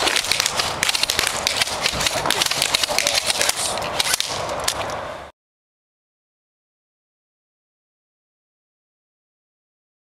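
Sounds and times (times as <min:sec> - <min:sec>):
airsoft guns firing: 0:00.0 - 0:04.4.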